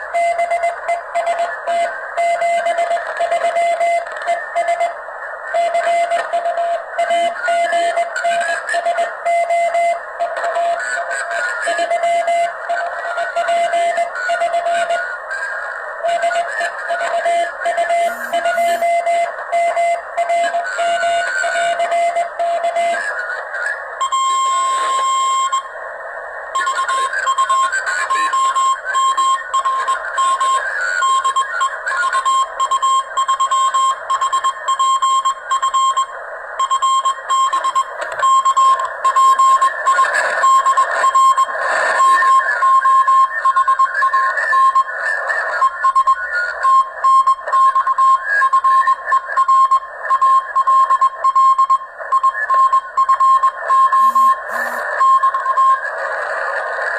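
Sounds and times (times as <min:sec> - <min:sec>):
morse code tone: 0:18.0 - 0:19.0, 0:53.9 - 0:54.9
radio receiver hiss: 0:18.0 - 0:19.0, 0:54.0 - 0:55.0.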